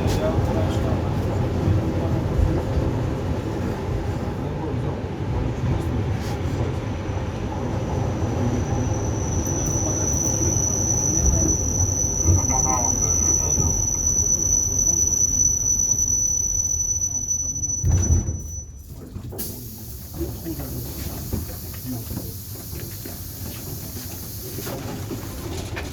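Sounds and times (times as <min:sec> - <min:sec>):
electric train rumble: 0:00.0 - 0:25.9
high steady squeal: 0:08.4 - 0:18.9.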